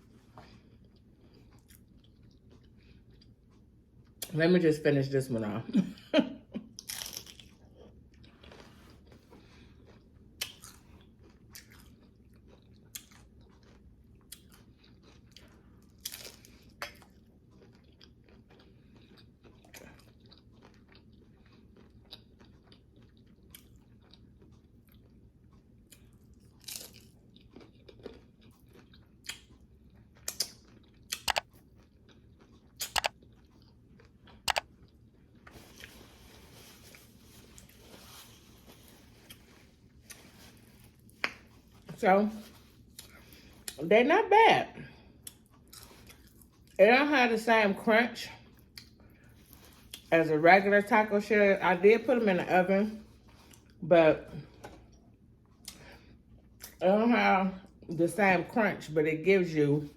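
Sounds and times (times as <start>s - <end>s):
soft chewing: 0.0s - 4.4s, 6.4s - 43.8s, 44.8s - 46.8s, 48.2s - 50.1s, 52.9s - 56.8s
crunching taco shell: 6.8s - 7.6s, 25.9s - 41.8s.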